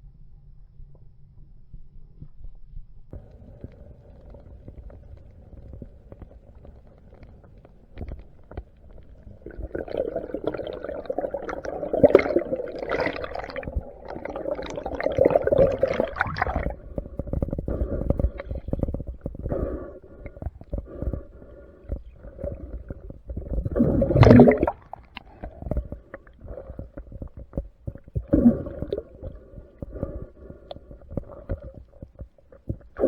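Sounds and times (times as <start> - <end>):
low underwater rumble: 0.6 - 33.0
water gurgling and bubbling: 8.8 - 33.0.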